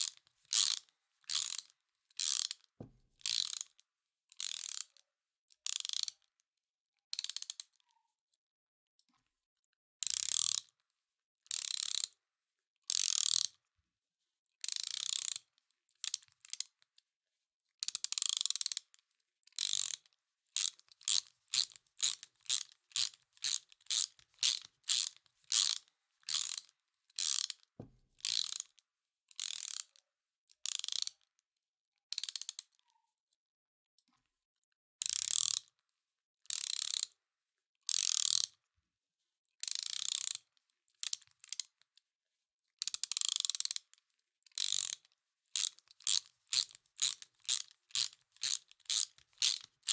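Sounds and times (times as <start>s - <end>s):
ratchet wrench clicking: 0.0s - 2.6s, 3.2s - 3.7s, 4.4s - 4.9s, 5.8s - 6.2s, 7.2s - 7.6s, 10.0s - 10.7s, 11.5s - 12.0s, 12.9s - 13.5s, 14.7s - 15.4s, 18.1s - 18.8s, 19.6s - 27.6s, 28.2s - 28.7s, 29.4s - 29.8s, 30.7s - 31.1s, 35.1s - 35.6s, 36.5s - 37.0s, 37.9s - 38.5s, 39.8s - 40.4s, 43.1s - 43.8s, 44.6s - 45.0s, 45.6s - 49.9s.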